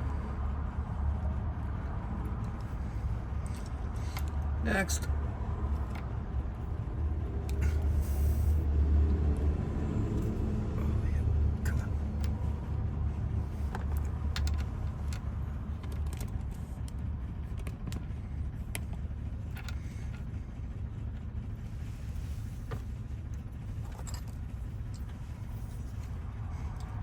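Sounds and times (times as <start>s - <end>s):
steady low hum: 0.0s - 27.0s
small metal clicks and scrapes: 2.2s - 4.5s, 11.6s - 20.4s.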